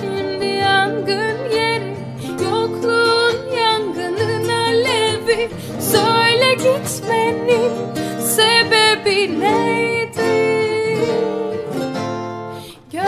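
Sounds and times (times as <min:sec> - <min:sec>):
woman singing: 0:00.0 - 0:13.0.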